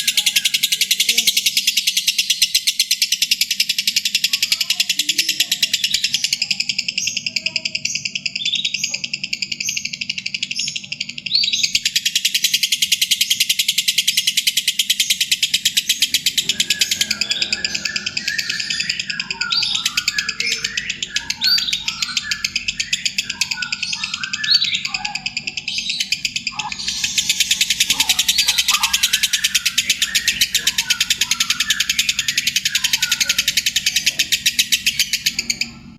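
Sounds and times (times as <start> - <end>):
birds chirping: 0.0 - 35.9
high-pitched trill: 15.2 - 35.8.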